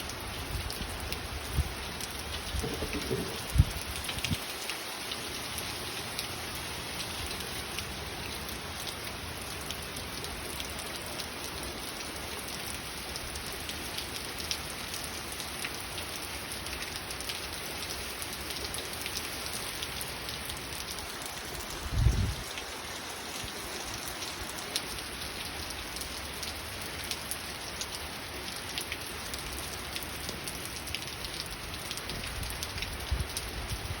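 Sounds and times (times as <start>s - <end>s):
light steady rain: 0.0s - 34.0s
low thumps: 2.6s - 3.8s.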